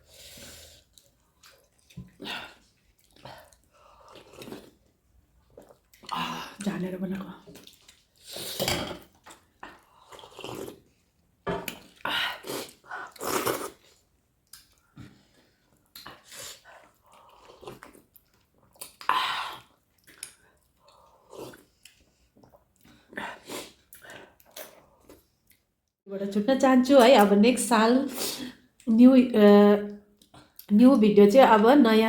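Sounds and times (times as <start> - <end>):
person chewing: 0.7 - 6.2, 7.6 - 25.7.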